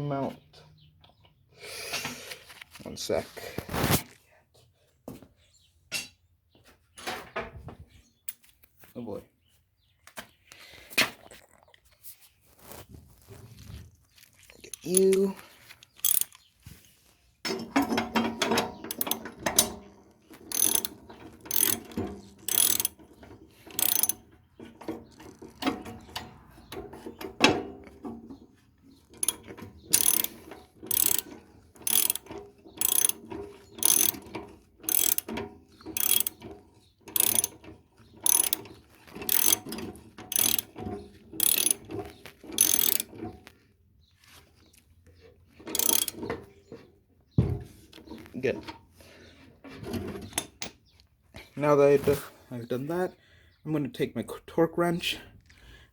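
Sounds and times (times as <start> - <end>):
socket ratchet clicking: 16.0 - 16.4, 18.9 - 19.7, 20.5 - 23.0, 23.7 - 24.2, 29.2 - 33.2, 33.8 - 34.3, 34.9 - 35.3, 35.9 - 36.4, 37.1 - 37.6, 38.2 - 38.6, 39.2 - 39.7, 40.3 - 40.8, 41.4 - 41.8, 42.6 - 43.1, 45.7 - 46.2.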